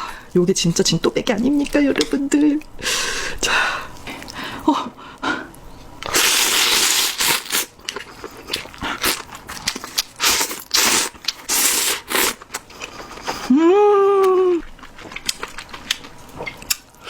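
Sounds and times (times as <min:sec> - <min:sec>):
crunchy chewing and smacking: 0:06.0 - 0:13.5, 0:14.6 - 0:17.0
noisy slurp: 0:06.0 - 0:13.5.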